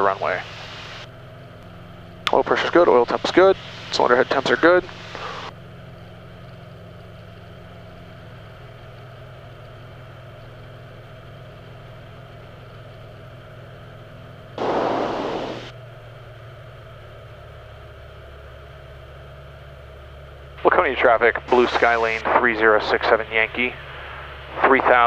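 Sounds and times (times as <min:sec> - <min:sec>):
airplane engine and propeller drone: 0:00.0 - 0:25.0
burst of hiss: 0:14.6 - 0:15.7.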